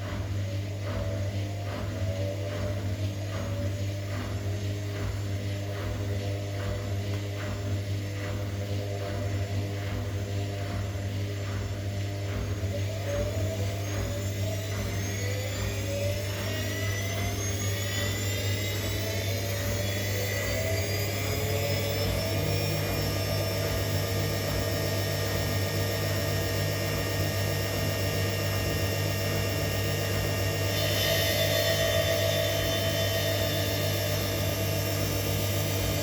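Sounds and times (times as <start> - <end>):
washing machine motor whine: 0.0 - 36.0
deep constant hum: 22.8 - 36.0.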